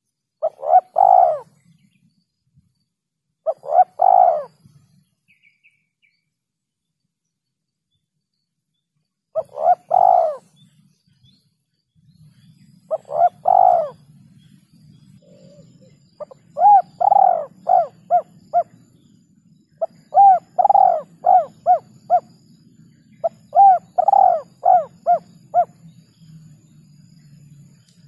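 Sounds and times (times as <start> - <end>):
dove cooing: 0.4 - 1.6, 3.4 - 4.6, 9.4 - 10.5, 12.9 - 14.1, 15.2 - 19.1, 19.8 - 22.4, 23.1 - 25.8.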